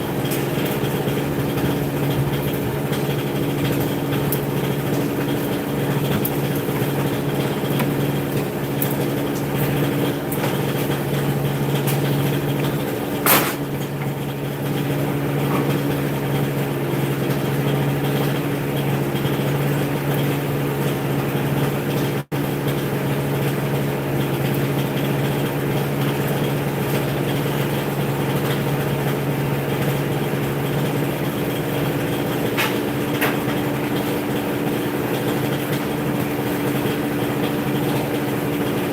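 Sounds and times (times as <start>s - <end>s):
motor humming: 0.0s - 21.9s.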